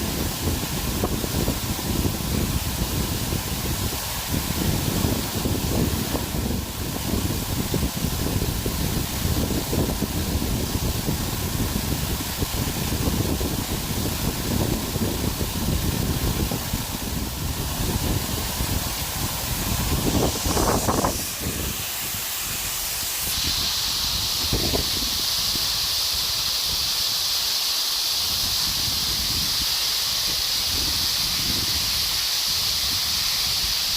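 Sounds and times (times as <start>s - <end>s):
waterfall rushing: 0.0s - 33.9s
low rumbling: 15.4s - 23.5s.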